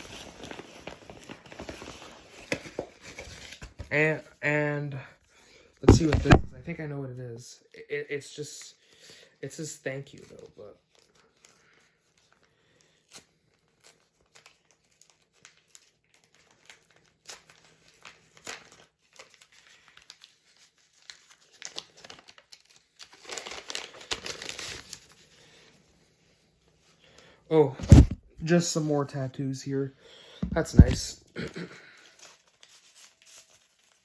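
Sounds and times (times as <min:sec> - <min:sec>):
paper packaging crinkling: 0:00.0 - 0:03.9, 0:10.9 - 0:25.7, 0:31.9 - 0:34.0.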